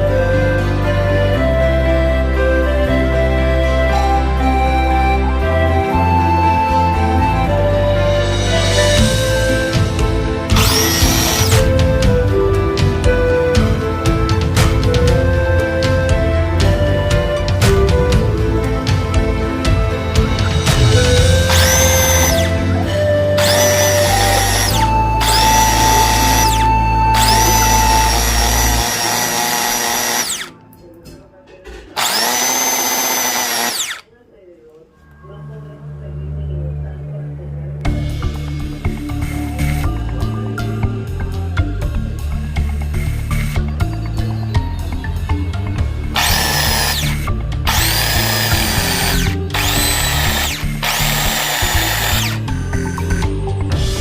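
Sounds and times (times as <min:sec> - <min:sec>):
background music: 0:00.0 - 0:34.2, 0:34.9 - 0:54.0
circular saw motor whine: 0:10.6 - 0:11.7, 0:21.5 - 0:22.6, 0:23.4 - 0:30.5, 0:32.0 - 0:34.0, 0:46.2 - 0:52.9.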